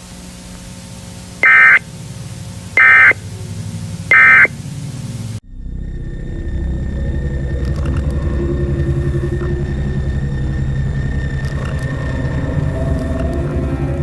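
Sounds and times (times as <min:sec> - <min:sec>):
low steady hum: 0:00.0 - 0:13.9
raspy data tone bursts: 0:01.4 - 0:01.9, 0:02.8 - 0:03.2, 0:04.1 - 0:04.5.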